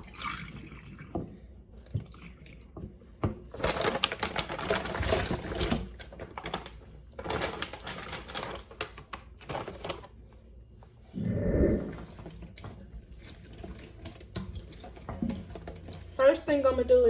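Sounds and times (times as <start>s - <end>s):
plastic packaging crackling: 3.6s - 10.1s.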